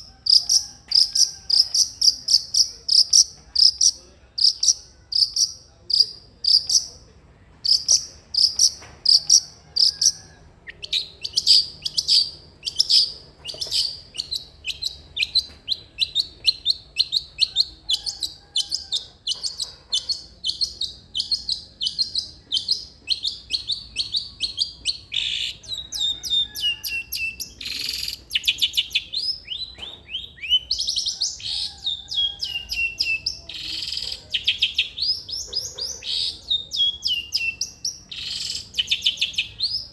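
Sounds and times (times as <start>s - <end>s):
bird singing chattering song: 0.0s - 39.9s.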